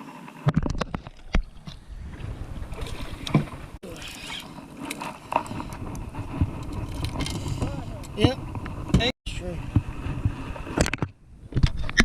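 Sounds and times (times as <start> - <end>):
water and wind against hull: 0.0 - 12.0
fishing gear knocks and clicks: 4.1 - 9.1.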